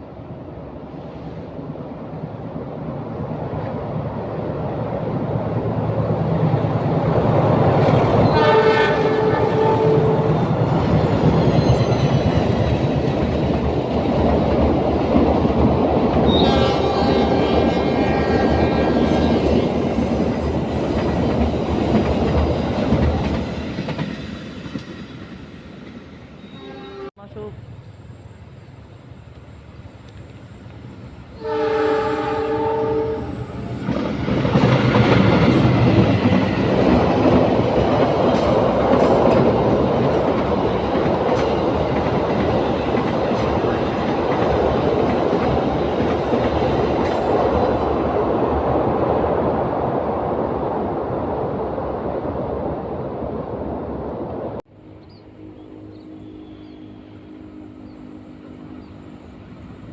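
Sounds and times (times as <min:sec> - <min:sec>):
train wheels rumbling on rails: 0:00.6 - 0:26.4, 0:27.0 - 0:59.9
train horn: 0:08.2 - 0:10.4, 0:16.3 - 0:19.1, 0:26.4 - 0:27.2, 0:31.4 - 0:33.6.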